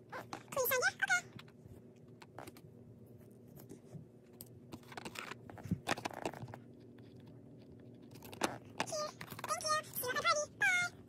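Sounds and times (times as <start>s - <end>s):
small toys clicking and rustling: 4.3s - 10.4s.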